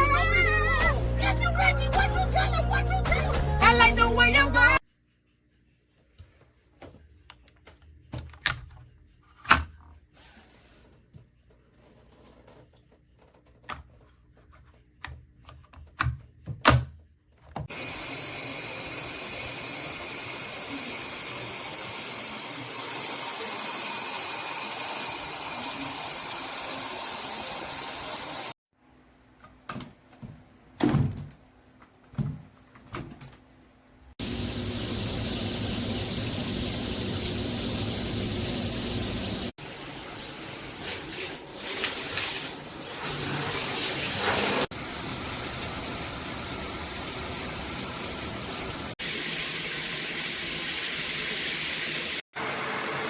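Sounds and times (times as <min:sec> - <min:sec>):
shower water spraying: 0:17.7 - 0:28.6, 0:34.2 - 0:53.0.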